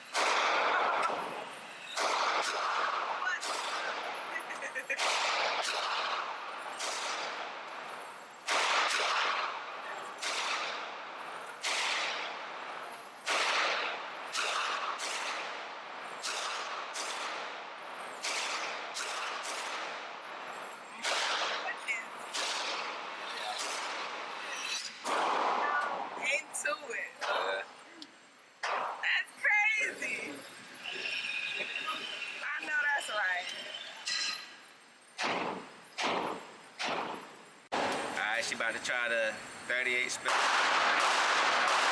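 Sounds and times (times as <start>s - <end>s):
handgun shots with echo: 0.1s - 1.4s, 2.0s - 4.2s, 4.9s - 7.5s, 8.4s - 10.8s, 11.6s - 12.3s, 13.2s - 15.6s, 16.2s - 17.5s, 18.2s - 20.0s, 21.0s - 21.7s, 22.3s - 22.9s, 23.5s - 24.2s, 25.0s - 26.0s, 35.2s - 38.1s, 40.2s - 41.9s.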